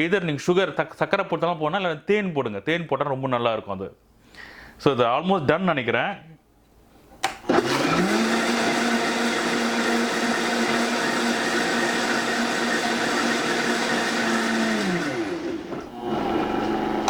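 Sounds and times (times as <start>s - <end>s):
blender motor running: 7.5s - 17.0s.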